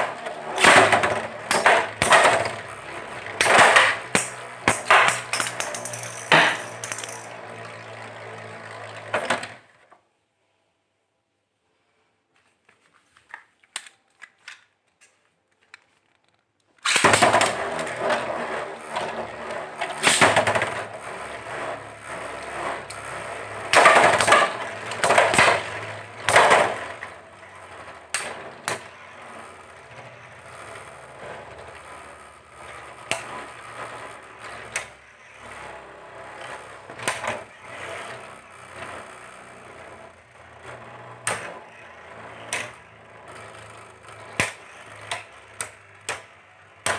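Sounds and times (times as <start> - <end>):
spinning tops scraping and clashing: 3.4 - 7.4.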